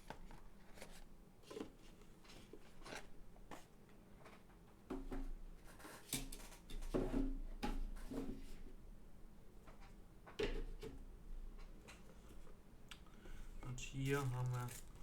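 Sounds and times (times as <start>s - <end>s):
packaging being handled: 14.0s - 15.0s.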